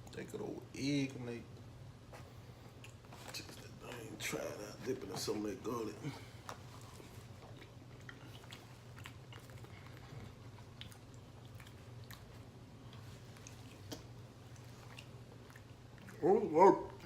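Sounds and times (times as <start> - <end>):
steady low hum: 0.0 - 17.0
man chewing: 2.2 - 3.6, 6.3 - 17.0.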